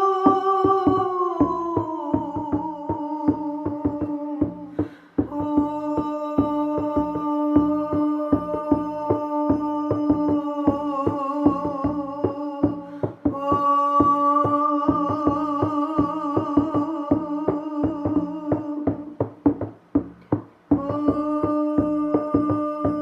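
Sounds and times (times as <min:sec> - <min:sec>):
drum beating steadily: 0:00.0 - 0:23.0.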